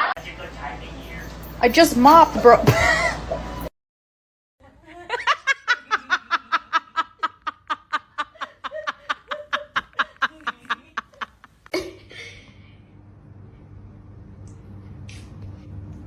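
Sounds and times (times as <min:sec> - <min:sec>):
person laughing: 0:04.9 - 0:12.5.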